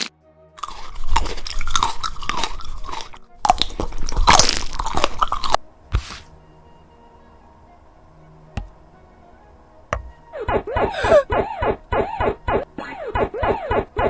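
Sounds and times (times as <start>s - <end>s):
loud crunching: 0.0s - 6.3s.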